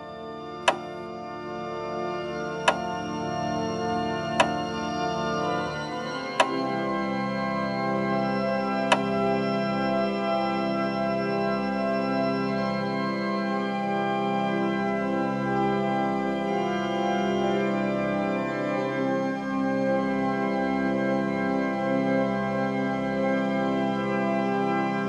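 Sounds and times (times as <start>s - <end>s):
organ chords: 0.0s - 25.0s
sharp click: 0.7s - 0.9s, 2.7s - 2.9s, 4.4s - 4.6s, 6.3s - 6.6s, 8.9s - 9.1s.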